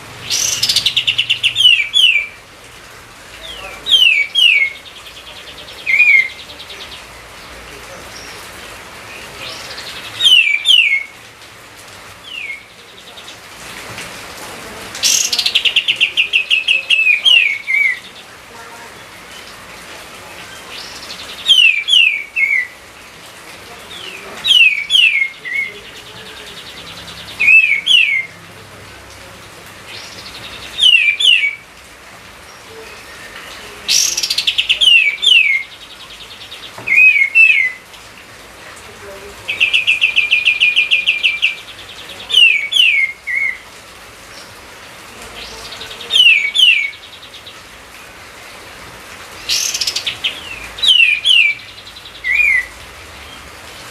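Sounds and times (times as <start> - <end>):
songbird singing whistled notes: 0.2 - 2.4, 3.5 - 7.2, 9.1 - 11.2, 12.2 - 13.4, 15.0 - 18.2, 20.7 - 22.8, 23.9 - 28.4, 29.9 - 31.6, 32.5 - 37.8, 39.5 - 43.6, 45.4 - 47.6, 49.4 - 52.7.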